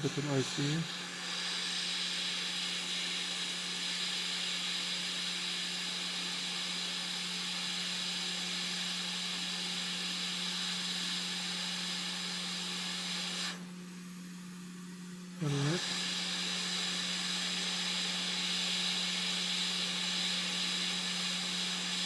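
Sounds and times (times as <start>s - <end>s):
steady low hum: 0.0s - 2.1s
hot air hissing: 0.0s - 13.8s, 15.4s - 22.0s.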